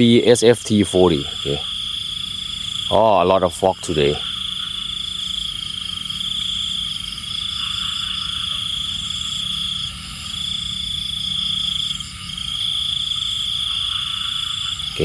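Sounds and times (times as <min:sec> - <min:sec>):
low steady hum: 0:00.0 - 0:13.9
insects trilling: 0:00.0 - 0:15.0.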